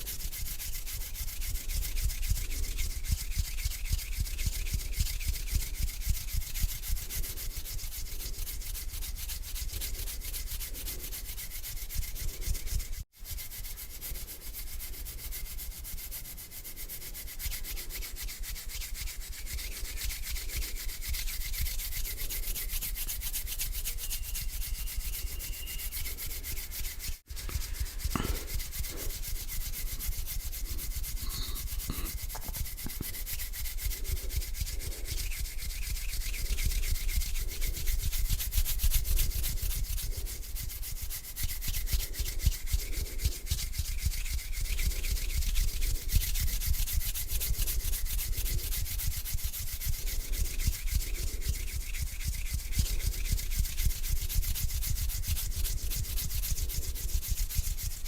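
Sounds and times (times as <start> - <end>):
hands rubbing together: 0.0 - 58.0.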